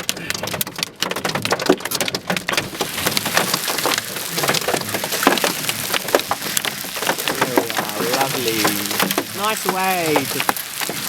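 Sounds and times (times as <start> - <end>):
hailstones clattering: 0.0 - 11.0
heavy rain hiss: 2.6 - 11.0.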